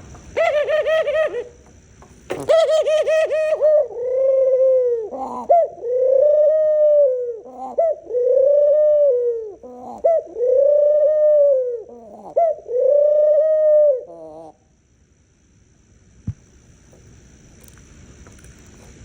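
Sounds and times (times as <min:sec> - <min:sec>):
dove cooing: 0:00.0 - 0:01.7, 0:02.3 - 0:14.6.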